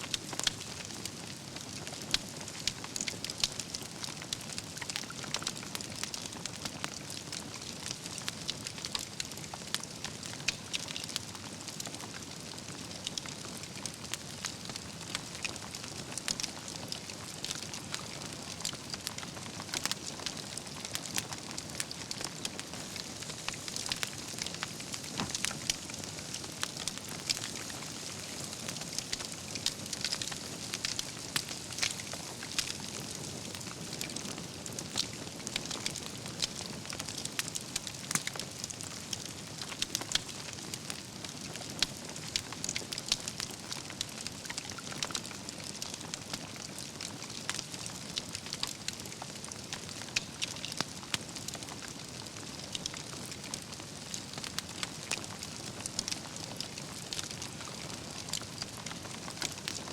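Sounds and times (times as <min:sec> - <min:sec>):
fire hissing softly: 0:00.0 - 0:59.9
wood fire crackling and popping: 0:00.0 - 0:59.9.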